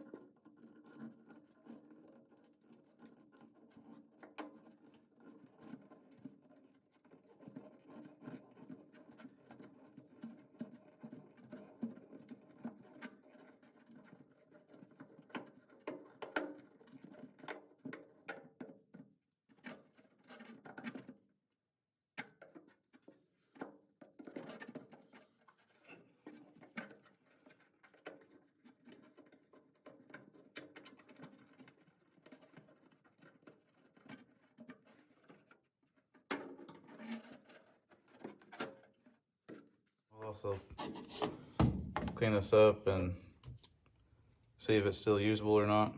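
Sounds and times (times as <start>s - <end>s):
hand tools clicking and scraping: 40.4s - 43.7s.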